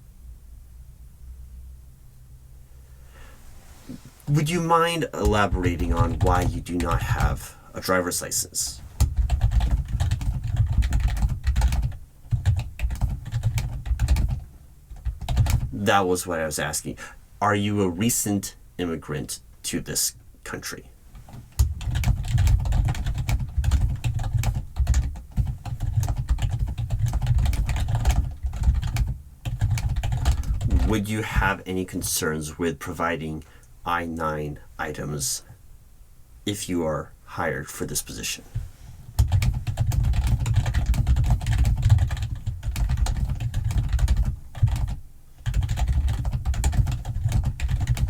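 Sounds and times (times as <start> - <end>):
typing on computer keyboard: 9.0 - 15.7, 21.3 - 30.9, 39.2 - 48.0.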